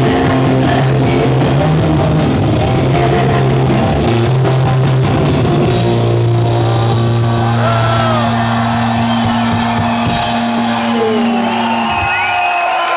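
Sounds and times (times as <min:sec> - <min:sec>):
crowd whistling and cheering: 0:05.6 - 0:12.9.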